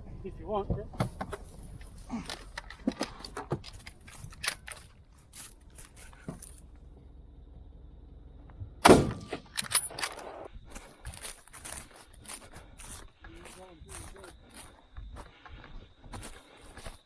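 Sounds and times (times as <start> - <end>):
small clicks and rustling: 1.0 - 6.8
rifle shot with echo: 8.8 - 9.5.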